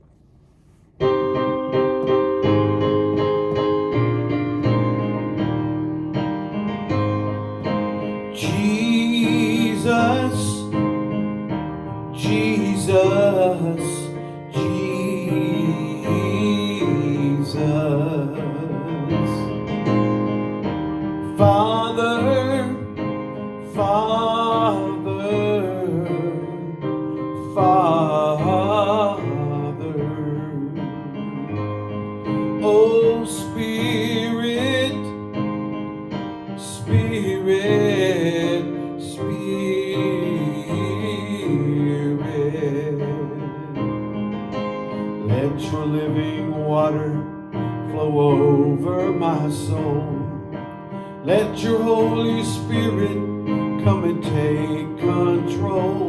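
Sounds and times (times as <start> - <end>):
keyboard piano chords: 0.0 - 56.0
person singing wordless phrases: 8.4 - 10.8, 12.2 - 19.6, 21.3 - 23.0, 23.7 - 31.5, 32.4 - 35.2, 36.6 - 43.7, 45.2 - 47.3, 47.9 - 50.5, 51.2 - 56.0.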